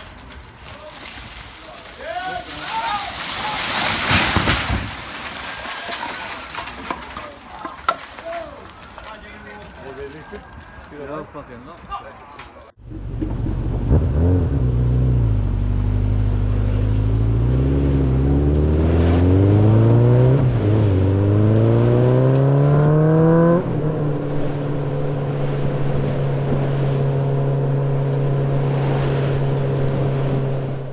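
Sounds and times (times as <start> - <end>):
engine revving: 12.8 - 30.9.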